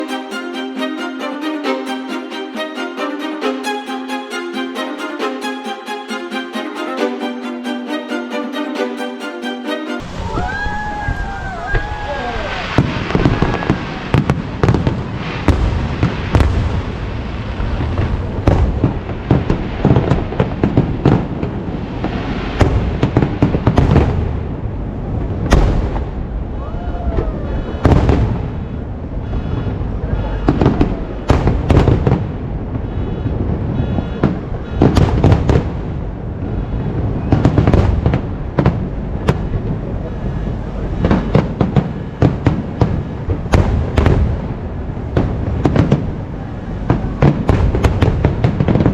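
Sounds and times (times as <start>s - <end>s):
fireworks bursting: 12.4s - 24.4s, 41.0s - 46.3s, 46.9s - 48.9s
continuous rumble: 35.7s - 48.9s.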